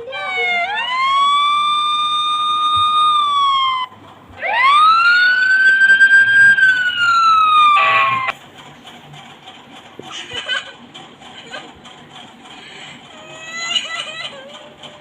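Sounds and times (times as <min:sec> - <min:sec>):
emergency vehicle siren wailing: 0:00.0 - 0:08.4
short harsh burst: 0:07.7 - 0:08.3.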